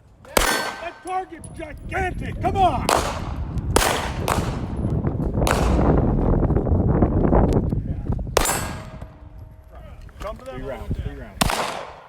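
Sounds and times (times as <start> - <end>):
pistol shots with echo: 0.3 - 1.2, 2.9 - 4.8, 5.4 - 6.0, 8.4 - 9.3, 11.4 - 12.0
faint distant gunshots: 2.9 - 4.8, 5.4 - 6.0, 11.4 - 12.0.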